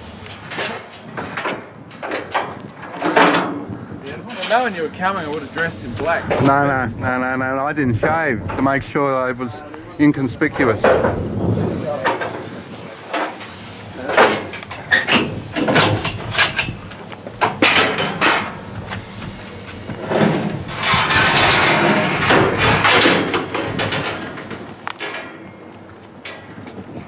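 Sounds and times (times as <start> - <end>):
sharp knocks and clatter: 0.3 - 3.7, 10.5 - 11.2, 13.1 - 25.6
dense rushing noise: 2.7 - 24.9.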